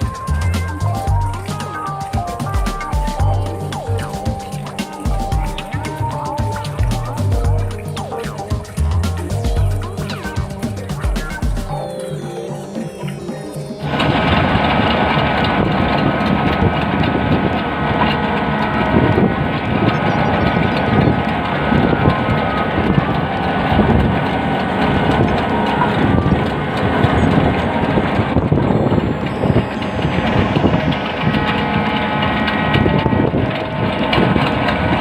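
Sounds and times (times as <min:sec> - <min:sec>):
excavator engine running: 0:13.3 - 0:35.0.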